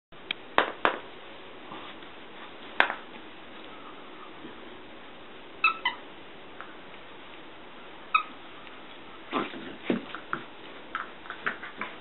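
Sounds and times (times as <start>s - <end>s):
short high squeaks: 5.6s - 6.0s.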